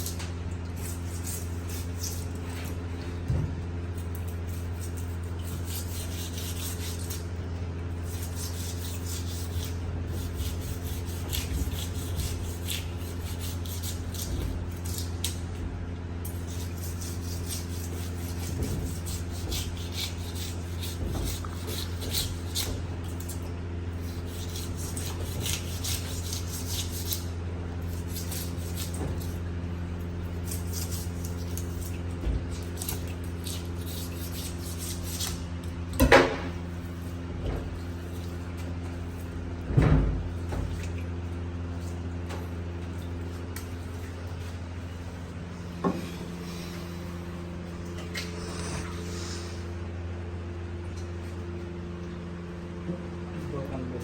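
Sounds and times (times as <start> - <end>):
knife rasping on fish: 0.0 - 2.9, 3.9 - 15.4, 16.2 - 35.7
steady low hum: 0.0 - 54.0.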